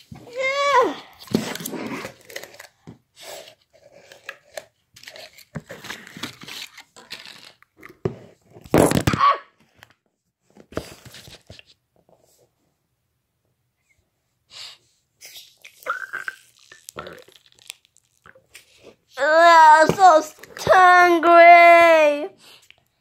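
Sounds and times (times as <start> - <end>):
slime squishing and crackling: 15.7 - 18.8.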